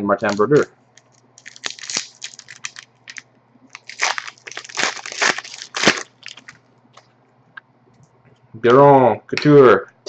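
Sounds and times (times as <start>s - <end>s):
wrapper crinkling and tearing: 0.2s - 6.6s.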